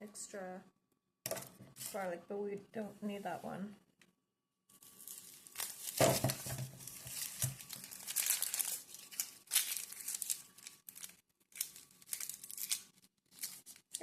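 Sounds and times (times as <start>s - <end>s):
packaging crinkling and rustling: 4.8s - 14.0s.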